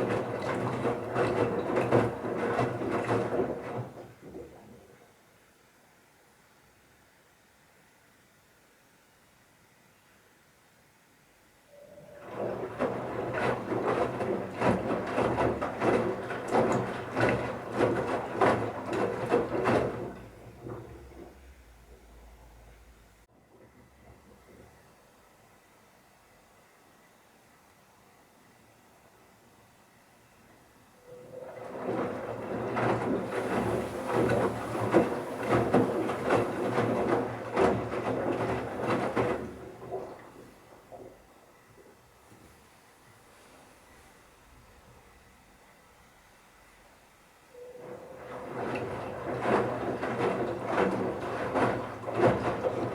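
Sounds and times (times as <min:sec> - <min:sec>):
washing machine motor hum: 0:00.0 - 0:05.1, 0:11.7 - 0:26.4, 0:30.3 - 0:52.9
wet towels tumbling and thudding: 0:31.7 - 0:40.2.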